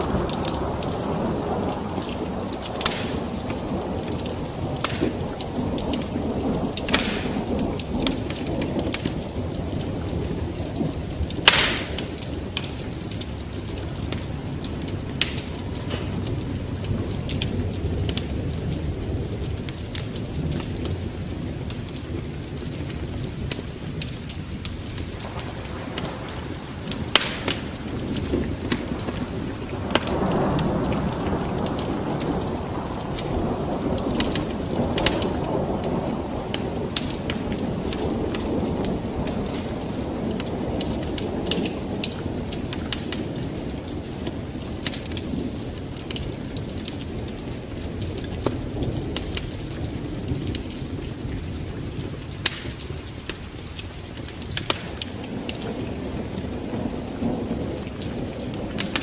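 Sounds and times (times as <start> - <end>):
fire crackling and popping: 0.0 - 59.0
low rush of flame: 1.6 - 9.8.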